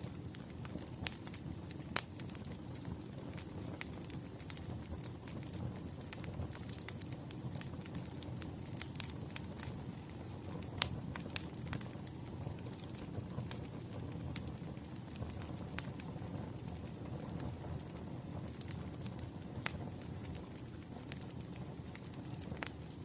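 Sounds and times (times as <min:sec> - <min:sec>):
fire crackles and pops: 0:00.0 - 0:23.0
low rumble of flames: 0:00.0 - 0:23.0.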